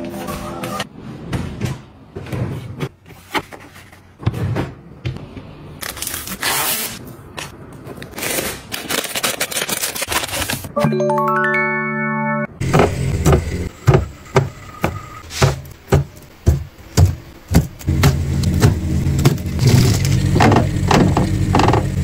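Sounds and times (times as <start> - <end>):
bright steady musical tone: 10.8 - 12.6.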